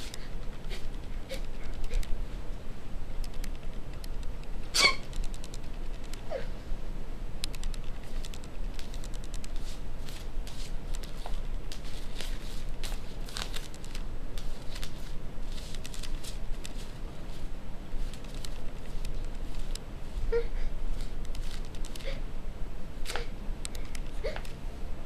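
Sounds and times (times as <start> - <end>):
steady low hum: 0.0 - 25.0
rustling and crinkling: 7.5 - 22.2.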